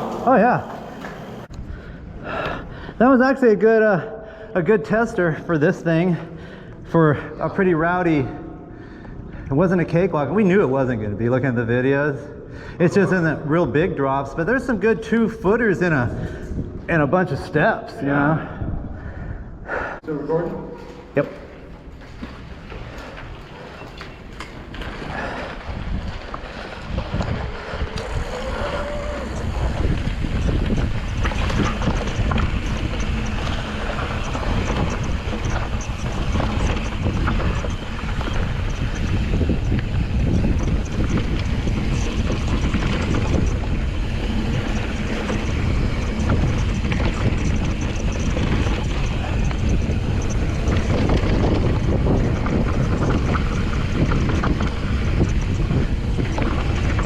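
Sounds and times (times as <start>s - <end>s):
wind buffeting microphone: 12.3s - 57.0s
mountain bike rattling over rocks: 20.3s - 57.0s.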